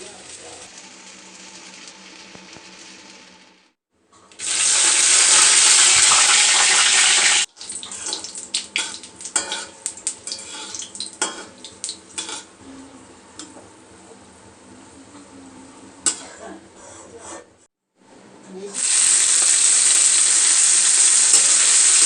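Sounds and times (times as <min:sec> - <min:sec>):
utensils clinking on cookware: 0:07.9 - 0:12.5
loud rushing hiss: 0:18.8 - 0:22.0.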